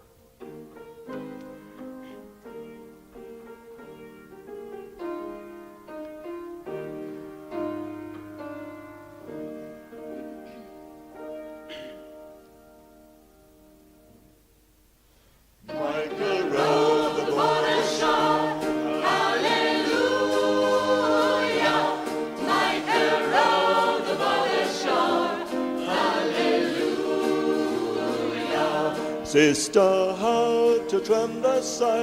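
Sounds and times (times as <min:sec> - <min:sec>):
choir singing gospel: 0:15.6 - 0:32.0.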